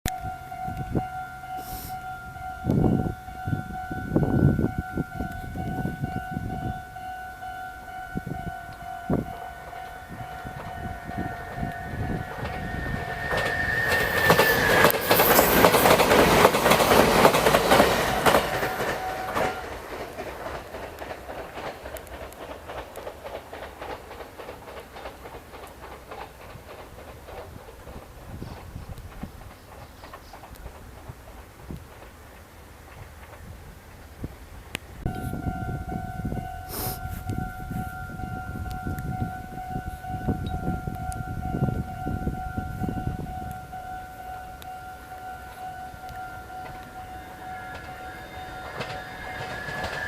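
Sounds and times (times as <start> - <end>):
level crossing alarm: 0.1 - 19.9, 35.1 - 50.0
train wheels clattering on rails: 0.1 - 50.0.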